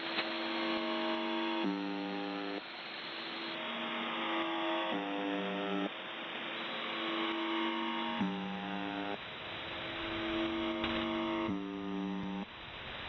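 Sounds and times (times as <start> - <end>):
radio hiss: 0.0 - 4.1, 8.7 - 13.0
low harsh radio buzz: 0.0 - 12.6
faint steady drone: 0.0 - 13.0.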